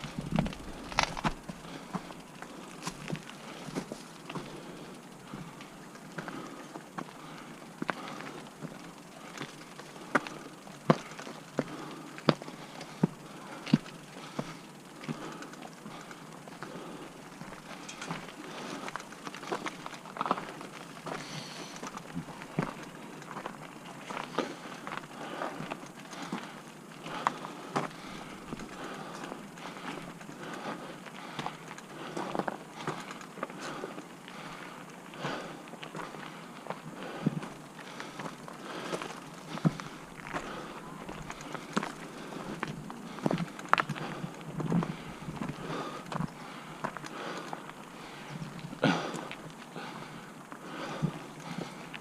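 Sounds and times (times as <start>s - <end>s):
bike knocking and clattering: 0.0s - 33.8s
bike tyres rolling on rough trail: 0.0s - 52.0s.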